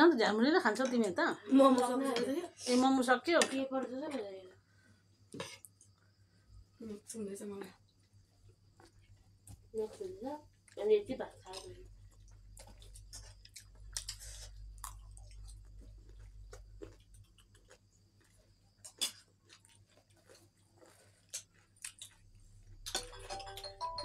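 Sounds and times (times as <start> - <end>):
person chewing crunchy food: 11.8 - 23.8
electronic chime: 22.9 - 24.0.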